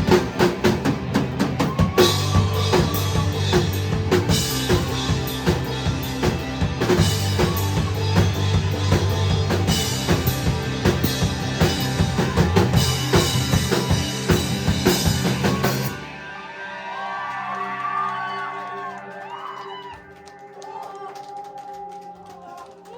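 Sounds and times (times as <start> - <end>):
live rock band playing: 0.0 - 17.8
crowd noise: 0.0 - 22.9
people shouting: 1.5 - 5.3.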